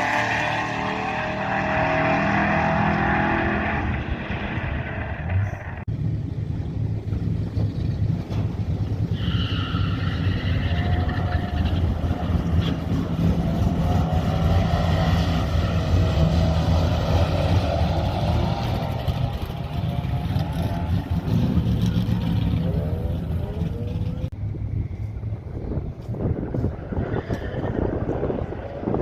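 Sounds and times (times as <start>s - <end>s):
car accelerating hard: 0.0s - 5.9s, 9.2s - 24.4s
low engine drone: 2.5s - 27.1s.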